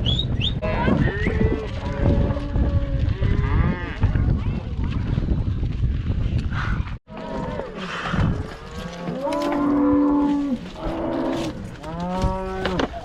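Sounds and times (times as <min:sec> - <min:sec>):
cattle mooing: 0:08.7 - 0:13.0.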